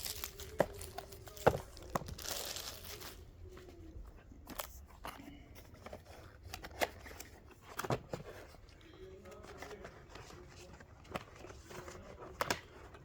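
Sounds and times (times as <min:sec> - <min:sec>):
packaging rustling: 0:00.0 - 0:03.8.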